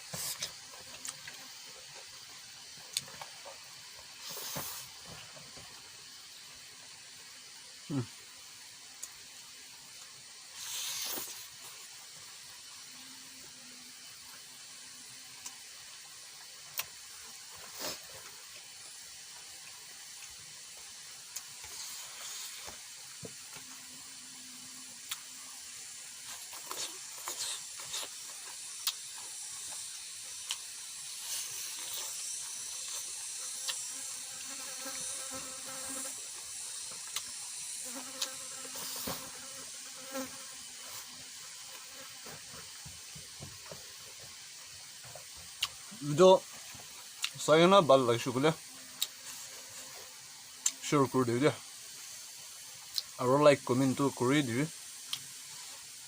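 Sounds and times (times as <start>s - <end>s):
steady high hiss: 0.0s - 56.0s
person chewing: 0.2s - 1.4s, 25.0s - 25.3s, 26.2s - 33.9s, 36.8s - 38.4s, 45.6s - 45.8s, 47.0s - 47.4s.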